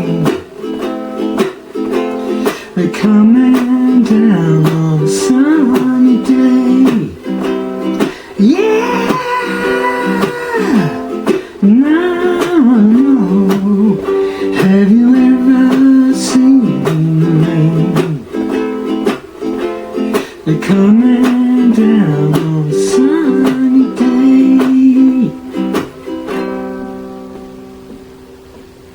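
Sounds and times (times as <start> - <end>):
ukulele strumming: 0.0 - 28.9
person humming: 7.9 - 18.4.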